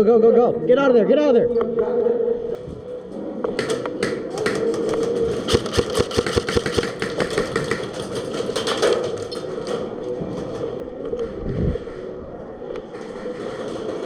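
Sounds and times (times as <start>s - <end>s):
steady hum: 1.8s - 14.0s
airsoft gun shots: 5.5s - 7.8s.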